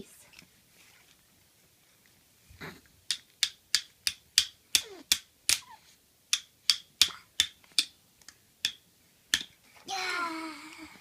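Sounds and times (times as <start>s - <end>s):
plastic toy hammer clacking: 3.1s - 5.7s, 6.3s - 9.6s.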